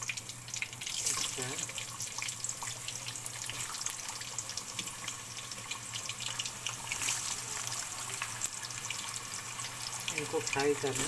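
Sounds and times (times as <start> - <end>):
food sizzling in hot oil: 0.0 - 11.0.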